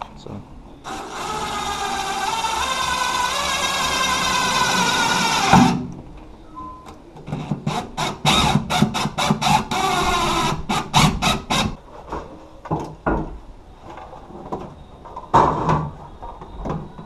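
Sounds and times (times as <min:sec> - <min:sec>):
squeal: 0:16.0 - 0:17.0.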